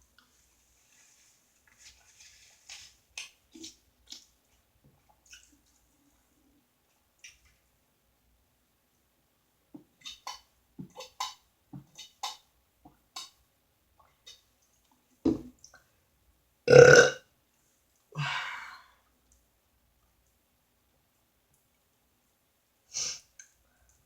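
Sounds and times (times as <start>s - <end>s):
woman burping: 16.7s - 17.2s.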